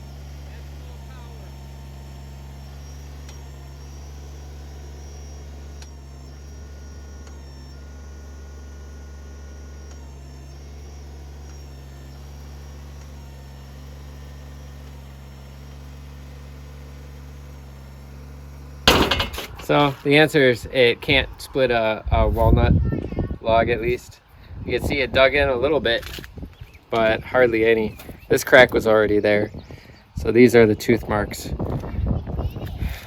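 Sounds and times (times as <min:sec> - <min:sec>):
faint thin whines: 0:00.0 - 0:22.6
tractor diesel engine running: 0:00.0 - 0:33.0.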